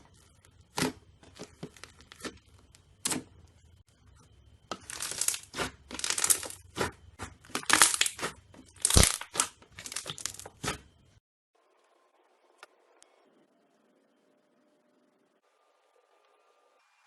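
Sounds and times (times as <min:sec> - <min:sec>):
slime crackling pops: 0:07.5 - 0:10.4.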